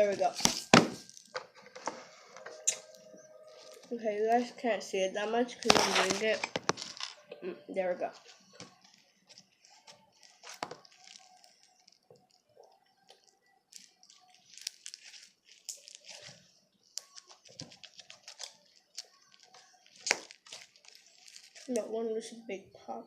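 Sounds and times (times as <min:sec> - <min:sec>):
slime crackling and clicking: 0:13.1 - 0:16.3.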